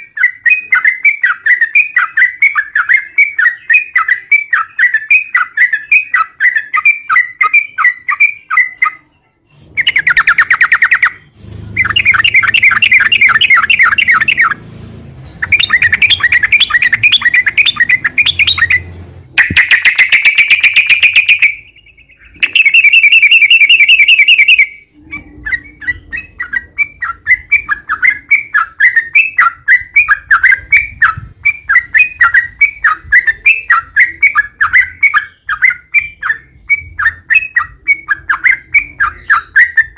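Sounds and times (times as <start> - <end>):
bird chirping: 0.0 - 39.9
bird rolling trills: 11.8 - 14.6, 15.3 - 30.5.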